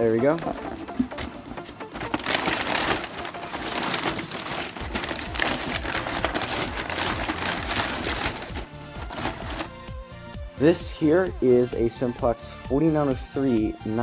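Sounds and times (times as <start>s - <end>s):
packaging crinkling: 0.0s - 9.9s.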